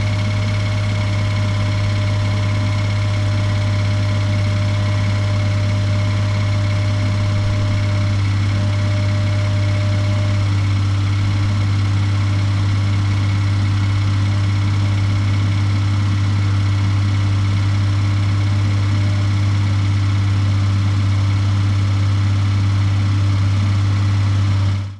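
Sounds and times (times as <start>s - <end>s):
car engine humming: 0.0s - 14.2s.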